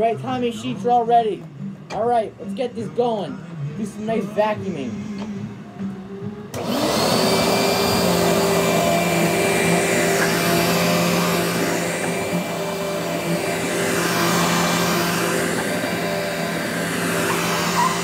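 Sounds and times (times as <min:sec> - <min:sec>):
vacuum cleaner running: 0:06.5 - 0:18.0.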